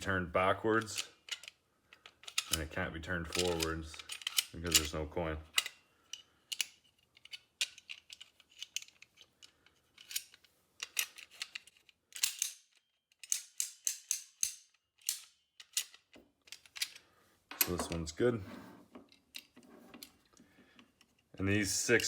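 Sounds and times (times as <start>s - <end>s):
coin mechanism clicking and clattering: 10.0s - 16.0s.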